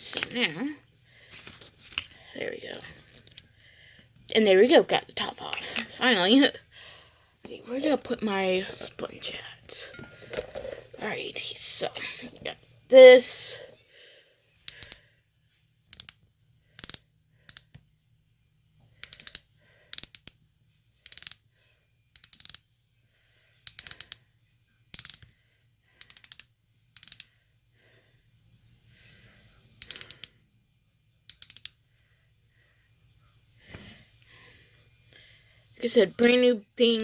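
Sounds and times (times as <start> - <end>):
ratcheting dial clicks: 15.9 - 16.2, 16.8 - 17.8, 19.0 - 20.4, 22.2 - 22.6, 23.7 - 24.2, 25.0 - 25.3, 26.0 - 27.3, 29.8 - 30.3, 31.3 - 31.8.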